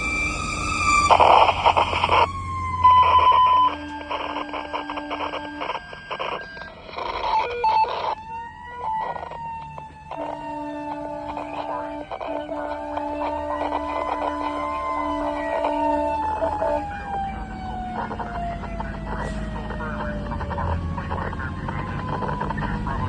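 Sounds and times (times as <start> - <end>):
loud harsh horn blasts: 0.0 - 6.9, 10.0 - 17.2
fire engine siren: 0.0 - 23.0.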